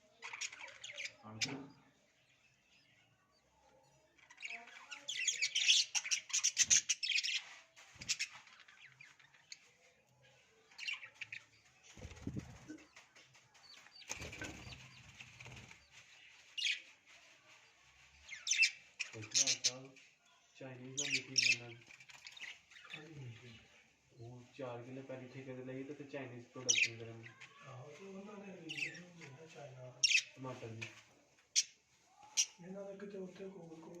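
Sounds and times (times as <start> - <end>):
budgerigars chirping: 4.4 - 8.5, 18.3 - 19.9, 21.0 - 23.6, 26.6 - 27.3, 30.0 - 30.7
wings fluttering: 5.8 - 9.9, 10.7 - 19.7.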